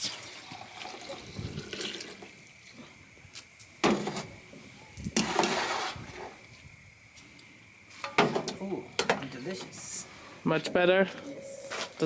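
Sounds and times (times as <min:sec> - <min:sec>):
person slurping coffee: 0:11.2 - 0:12.0.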